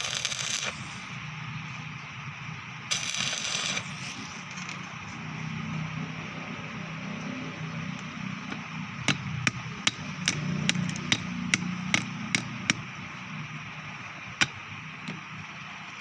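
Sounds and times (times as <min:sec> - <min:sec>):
steady low hum: 0:00.0 - 0:16.0
hammer tapping: 0:08.5 - 0:12.9, 0:14.4 - 0:15.2.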